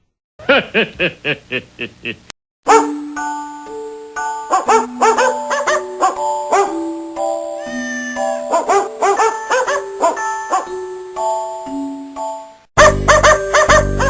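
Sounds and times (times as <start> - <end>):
dog barks set to music: 2.7 - 3.1, 4.4 - 6.8, 8.3 - 10.8, 12.8 - 14.0
held keyboard notes: 2.7 - 14.0.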